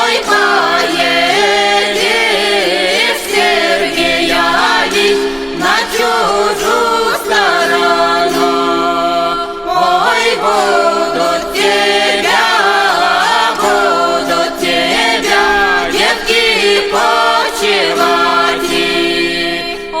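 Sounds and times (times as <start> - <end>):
plucked strings: 0.0 - 20.0
voices singing a folk chant: 0.0 - 20.0
low drone: 9.3 - 19.0.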